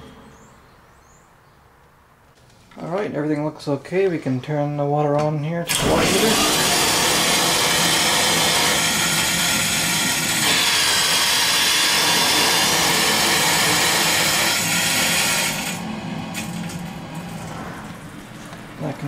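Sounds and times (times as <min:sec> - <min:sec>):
water rushing through pipes: 0:05.7 - 0:19.0.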